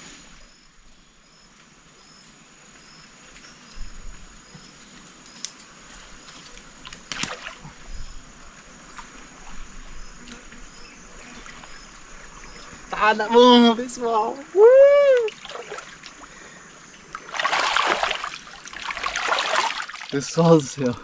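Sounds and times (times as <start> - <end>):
river water splashing around wader: 6.2 - 13.6, 15.1 - 21.0.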